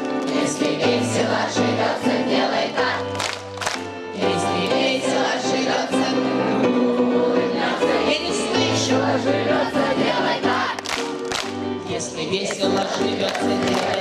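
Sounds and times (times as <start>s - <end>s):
instrumental backing track: 0.0s - 14.0s
children singing: 0.3s - 3.1s, 4.2s - 10.8s
sharp claps: 3.2s - 3.9s, 10.8s - 11.6s, 12.5s - 14.0s.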